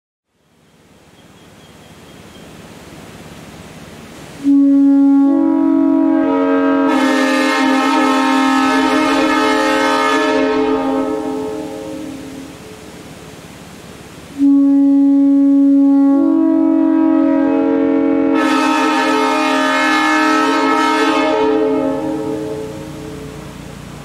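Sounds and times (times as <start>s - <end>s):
compressed air hiss: 2.5s - 4.7s
locomotive horn blast: 4.4s - 12.8s, 14.3s - 23.8s.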